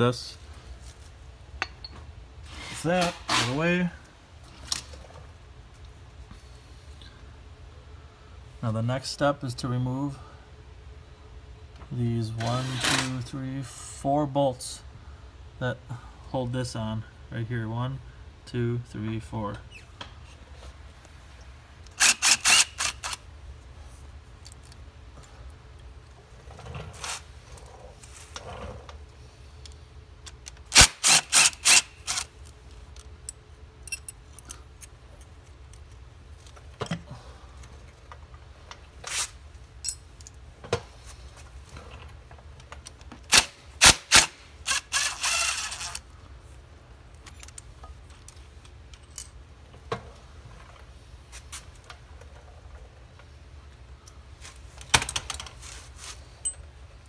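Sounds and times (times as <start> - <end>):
tools and metal parts clinking: 31.3 - 37.0, 39.8 - 40.4, 47.1 - 49.4, 56.3 - 56.7.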